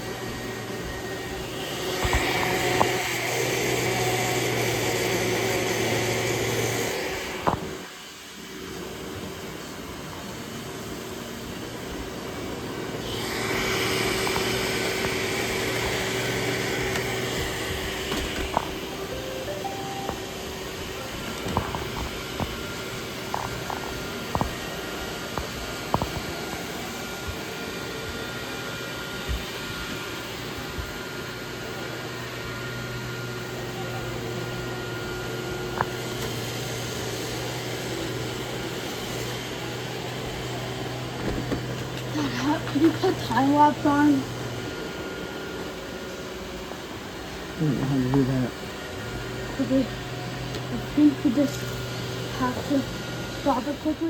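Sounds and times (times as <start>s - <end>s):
robot vacuum motor hum: 0.0s - 7.9s, 10.8s - 46.6s
hissing whir: 0.0s - 32.4s
rising three-note beep tune: 19.1s - 20.6s.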